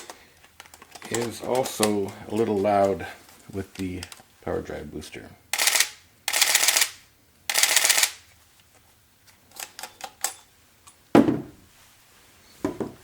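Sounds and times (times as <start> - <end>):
camera shutter burst: 5.5 - 8.3.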